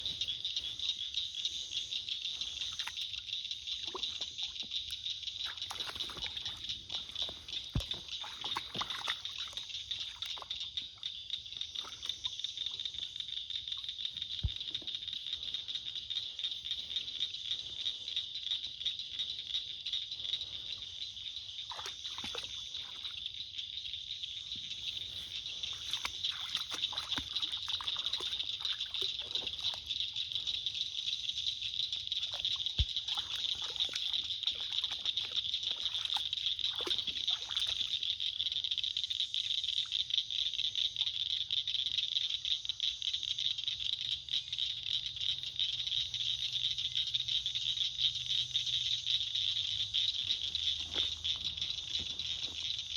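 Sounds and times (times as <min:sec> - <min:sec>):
water sloshing and splashing: 0:02.4 - 0:13.1, 0:20.6 - 0:23.4, 0:24.4 - 0:30.9, 0:32.0 - 0:38.2, 0:50.1 - 0:52.9.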